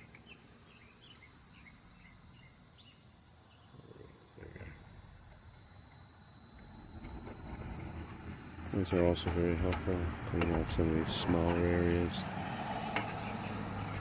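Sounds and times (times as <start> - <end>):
crickets chirping: 0.0 - 14.0
plastic scraper scratching: 6.9 - 14.0.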